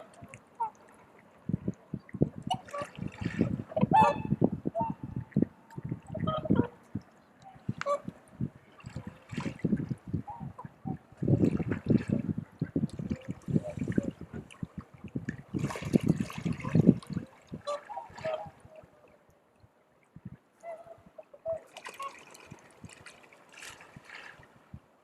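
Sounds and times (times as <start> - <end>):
swans honking: 0.0 - 0.9, 3.7 - 5.0, 6.1 - 6.8, 17.6 - 19.0
wind buffeting microphone: 1.4 - 18.9, 20.1 - 21.2.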